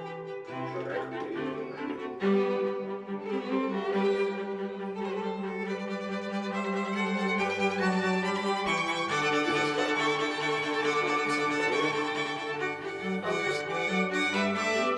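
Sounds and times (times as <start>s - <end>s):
bowed strings playing held notes: 0.5s - 2.7s.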